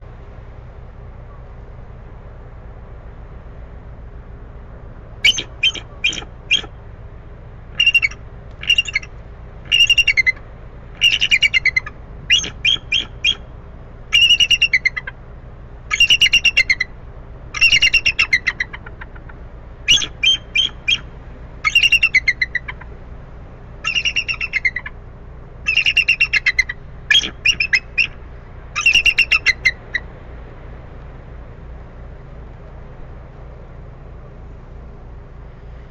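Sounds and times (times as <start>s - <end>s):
steady low hum: 0.0s - 35.9s
eagle chattering calls: 5.2s - 6.8s, 7.7s - 15.2s, 15.9s - 23.0s, 23.8s - 25.0s, 25.6s - 30.1s.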